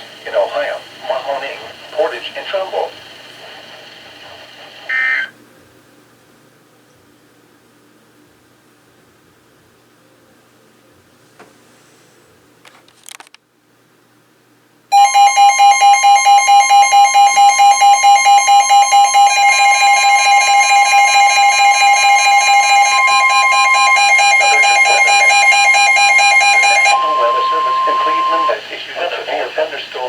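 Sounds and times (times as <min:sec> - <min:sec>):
two-tone alarm: 0:00.0 - 0:05.3, 0:14.9 - 0:28.8
faint hiss: 0:27.0 - 0:30.0.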